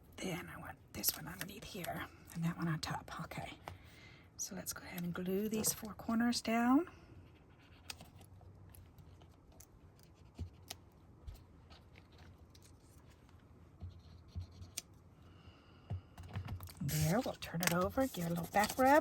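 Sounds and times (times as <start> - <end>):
paper scratching: 16.8 - 19.0.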